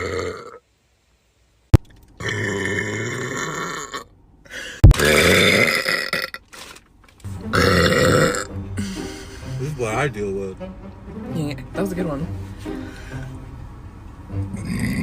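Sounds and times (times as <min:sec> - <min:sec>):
woman burping: 0:00.0 - 0:00.6, 0:02.2 - 0:04.1, 0:04.8 - 0:06.4, 0:07.5 - 0:08.5, 0:14.6 - 0:15.0.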